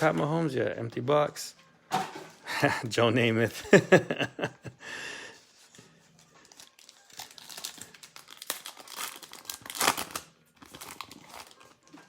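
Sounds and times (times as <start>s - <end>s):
plastic wrapper crinkling and tearing: 5.6s - 12.0s.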